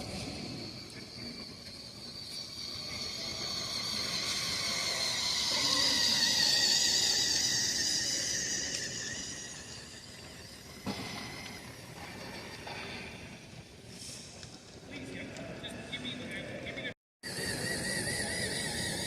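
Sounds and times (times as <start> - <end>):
toy train motor whining: 0.0 - 12.8, 17.2 - 19.0.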